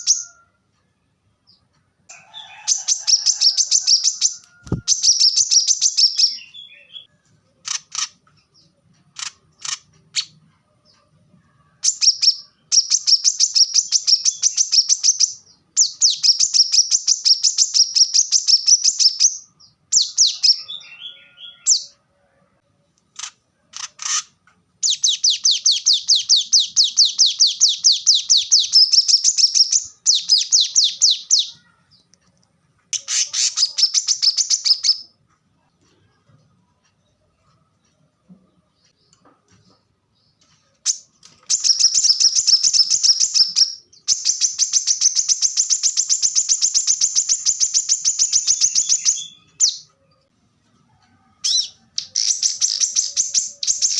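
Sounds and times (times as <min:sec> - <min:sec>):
sunbird singing trills: 0:03.2 - 0:07.1.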